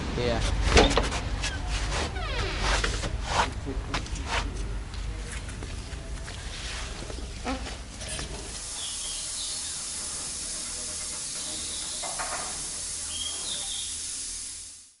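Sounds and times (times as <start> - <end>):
rain hissing: 6.5 - 15.0
bird chirps: 13.1 - 14.0.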